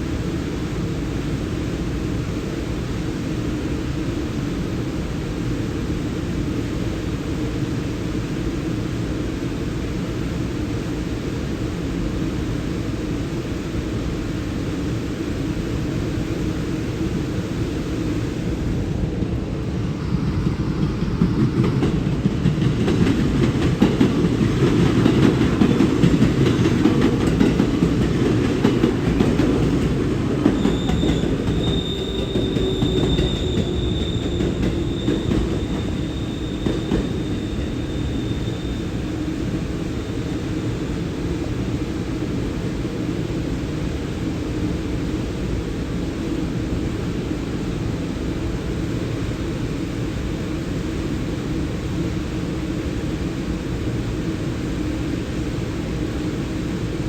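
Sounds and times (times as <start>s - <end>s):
train wheels rumbling and clicking: 19.1s - 39.8s
high wheel squeal: 30.5s - 39.3s.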